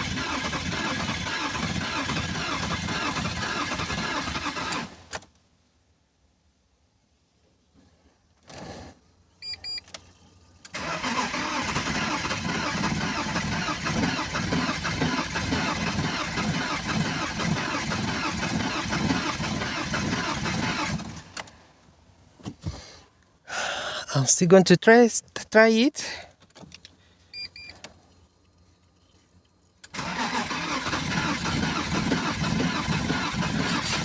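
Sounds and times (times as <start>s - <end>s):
car engine cranking on starter: 0.0s - 5.4s, 10.0s - 21.6s, 29.8s - 34.0s
short electronic beeps: 9.4s - 9.8s, 27.3s - 27.8s.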